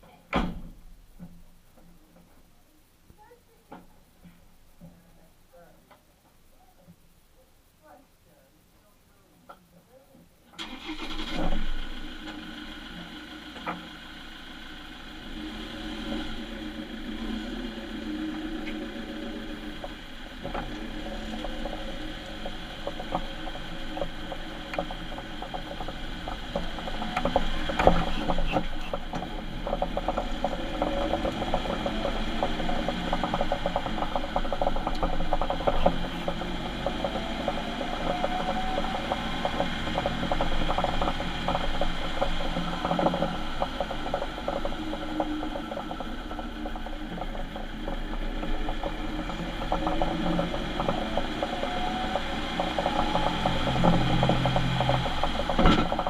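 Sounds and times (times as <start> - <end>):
drivetrain hum: 0.0 - 56.0
faint rising whine: 11.3 - 56.0
rapid clicking and rattling: 16.1 - 56.0.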